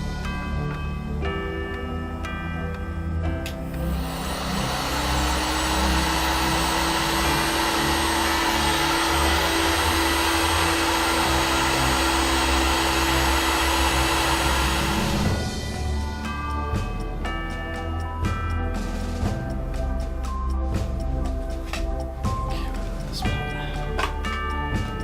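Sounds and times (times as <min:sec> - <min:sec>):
heat gun blowing air: 0:03.8 - 0:15.5.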